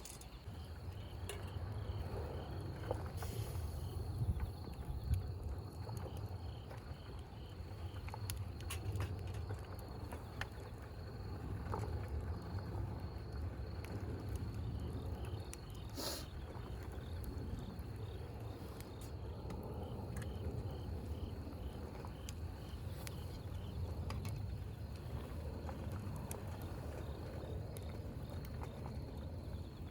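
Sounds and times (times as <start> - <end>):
insect chirping: 0.0 - 2.6, 3.4 - 8.8, 14.7 - 23.9
steady low rumble: 0.0 - 29.9.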